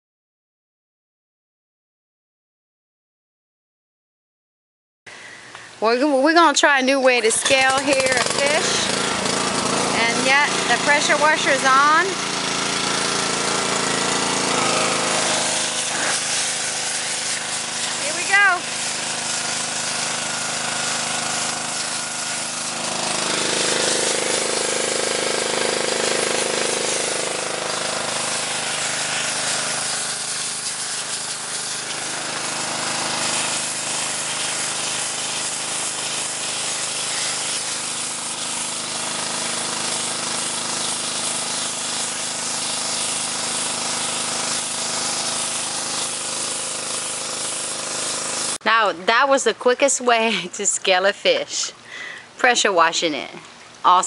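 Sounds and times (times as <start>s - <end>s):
pressure washer pump hum: 5.1s - 50.5s
pressure washer water jet hissing: 6.3s - 49.3s.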